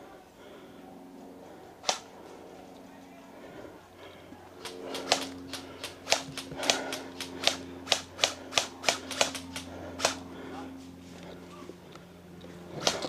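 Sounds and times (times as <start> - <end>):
airsoft gun shots: 1.8 - 2.1, 4.6 - 10.2, 12.8 - 13.0.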